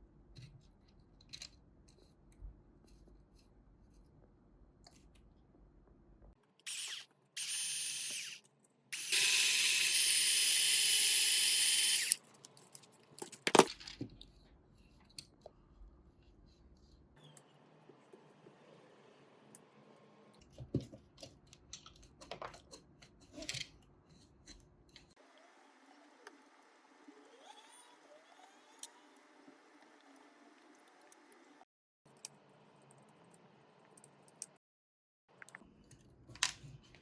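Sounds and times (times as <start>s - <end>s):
small electric motor whining: 6.7s - 8.4s, 9.0s - 12.2s.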